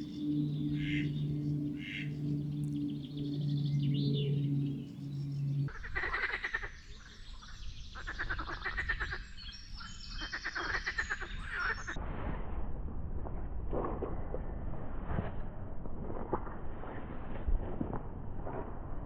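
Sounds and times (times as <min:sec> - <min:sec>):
rattling animal calls: 0:00.0 - 0:05.6
faint chirps: 0:00.0 - 0:05.7
steady low hum: 0:00.0 - 0:05.7.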